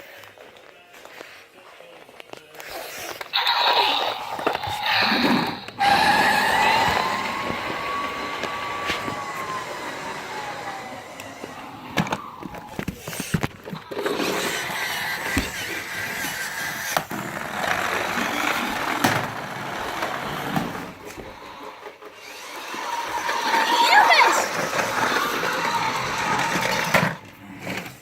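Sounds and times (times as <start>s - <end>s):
toy cars rolling on hard floor: 2.2s - 28.0s
toy cars clicking and knocking: 11.0s - 27.2s.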